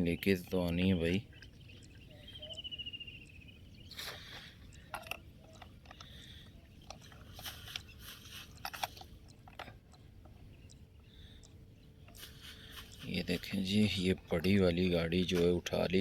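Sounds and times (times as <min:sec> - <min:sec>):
plastic toys clicking and scraping: 0:04.8 - 0:10.1.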